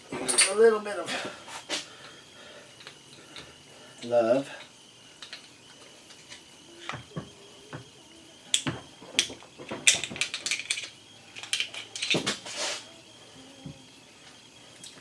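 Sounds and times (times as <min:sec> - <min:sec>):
metal tools clinking and rattling: 0:00.0 - 0:00.7, 0:08.5 - 0:12.5.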